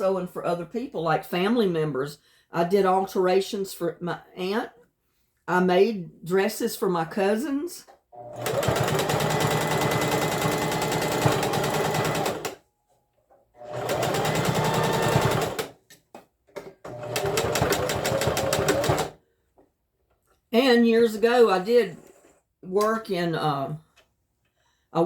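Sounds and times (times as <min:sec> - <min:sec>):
sewing machine stitching: 0:08.2 - 0:12.6, 0:13.6 - 0:15.8, 0:16.8 - 0:19.2.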